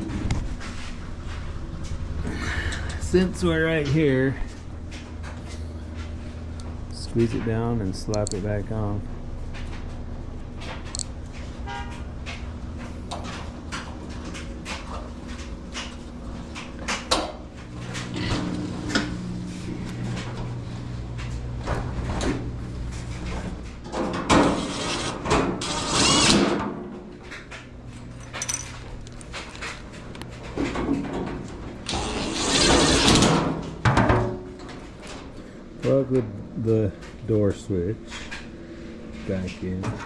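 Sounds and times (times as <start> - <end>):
metal clatters: 28.0 - 29.8.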